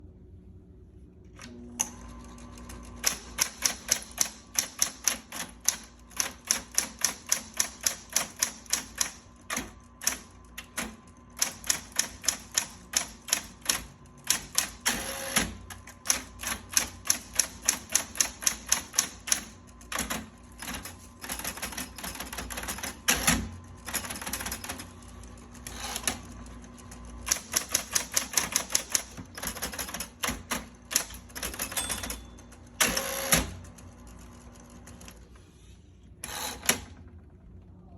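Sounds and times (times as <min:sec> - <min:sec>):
typewriter motor humming: 0:01.4 - 0:35.2, 0:36.2 - 0:37.0
typewriter keys striking: 0:03.0 - 0:24.8, 0:27.3 - 0:32.3.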